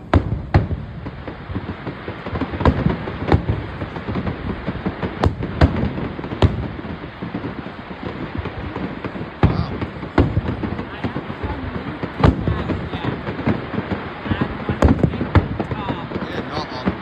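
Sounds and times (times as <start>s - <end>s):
fireworks bangs: 0.0s - 17.0s
fireworks rumble and crackle: 0.0s - 17.0s.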